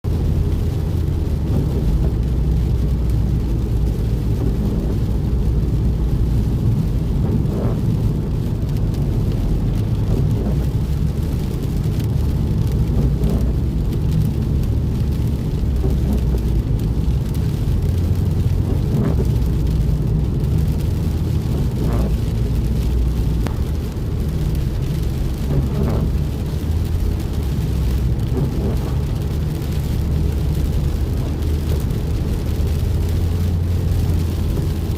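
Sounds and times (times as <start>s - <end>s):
rain hissing: 0.0s - 34.9s
rainstorm low rumble: 0.0s - 34.9s.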